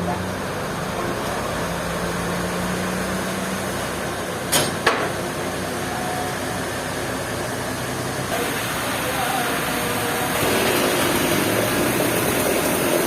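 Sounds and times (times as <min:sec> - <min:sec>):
machinery running: 0:03.7 - 0:13.0.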